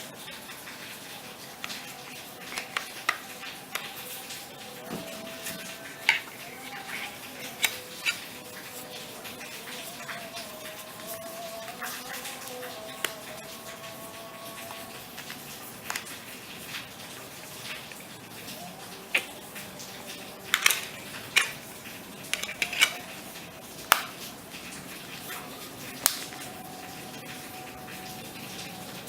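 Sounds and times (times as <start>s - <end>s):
small hard objects clicking: 20.5s - 23.1s.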